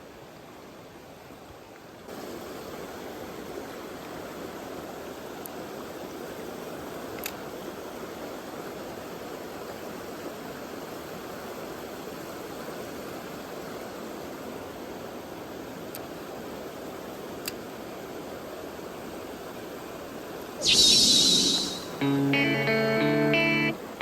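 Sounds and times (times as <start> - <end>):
short click: 20.6 - 22.0.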